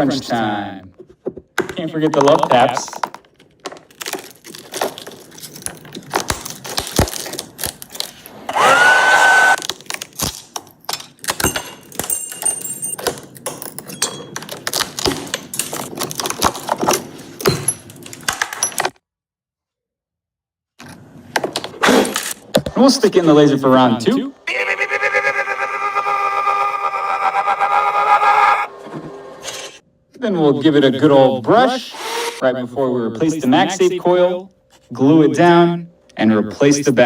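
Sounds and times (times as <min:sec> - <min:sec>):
glass tapping and cracking: 0:01.3 - 0:08.1, 0:09.6 - 0:19.0.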